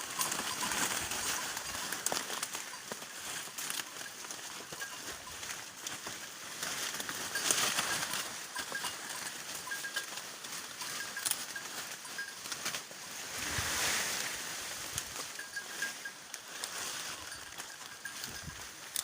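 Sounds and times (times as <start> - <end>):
wind rustling foliage: 0.0 - 19.0.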